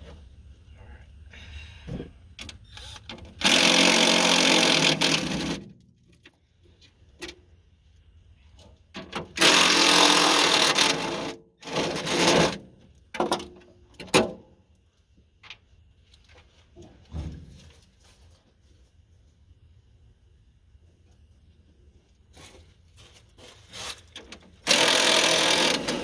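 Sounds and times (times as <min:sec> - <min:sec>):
cordless power driver running: 0:03.4 - 0:05.6, 0:09.4 - 0:11.3, 0:24.6 - 0:26.0.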